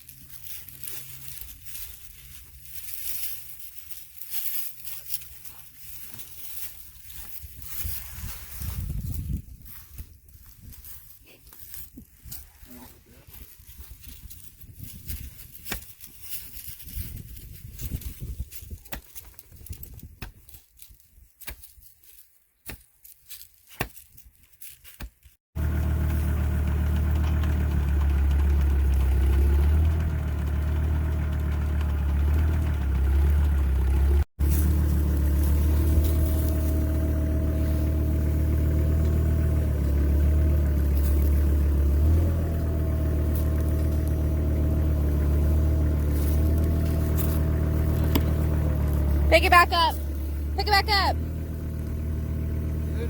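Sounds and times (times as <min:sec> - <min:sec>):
engine running: 0:00.0 - 0:12.4, 0:25.6 - 0:53.0
post hole digger scraping soil: 0:00.0 - 0:17.2, 0:25.6 - 0:53.0
wind rumble on microphone: 0:07.4 - 0:11.1, 0:13.2 - 0:20.2
digger blades chopping into ground: 0:15.6 - 0:16.0, 0:23.7 - 0:24.2, 0:45.9 - 0:49.1.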